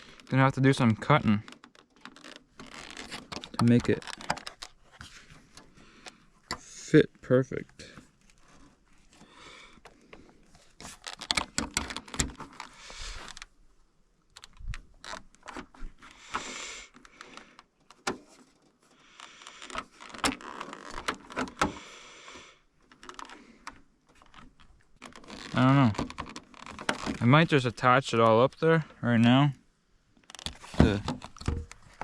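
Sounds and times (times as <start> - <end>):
rustling and scraping: 0.0 - 6.9, 7.6 - 13.6, 14.4 - 21.8, 22.9 - 28.3, 30.2 - 32.0
clicks and knocks of handling: 0.2 - 6.7, 9.8 - 13.5.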